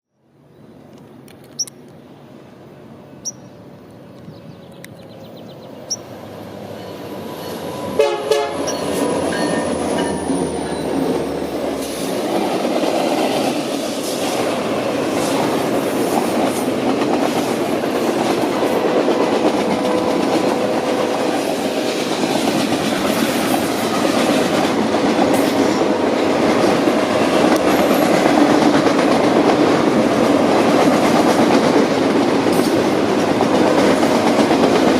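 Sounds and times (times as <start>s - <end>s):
freight train rumbling: 2.0s - 34.9s
train horn: 7.8s - 9.6s.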